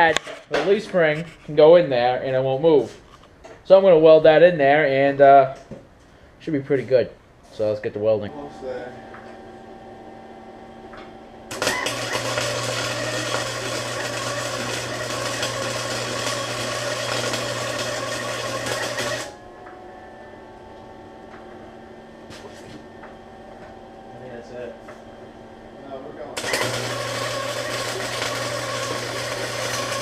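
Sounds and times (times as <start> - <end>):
welder hum: 8.1 - 30.0
welder arc crackling: 11.0 - 19.4, 26.2 - 30.0.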